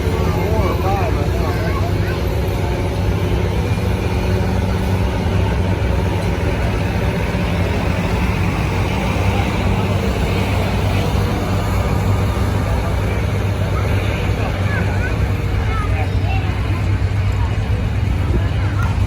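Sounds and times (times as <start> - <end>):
tractor engine droning: 0.0 - 19.0.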